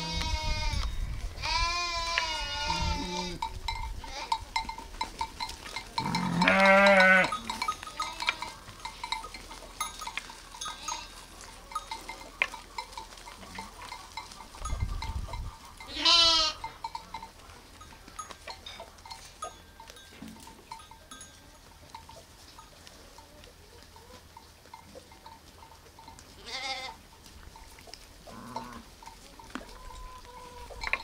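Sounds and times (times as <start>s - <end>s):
sheep bleating: 0.0s - 0.8s, 1.4s - 3.4s, 6.0s - 8.6s, 15.9s - 16.6s, 26.4s - 27.0s
faint clinks: 3.4s - 23.4s.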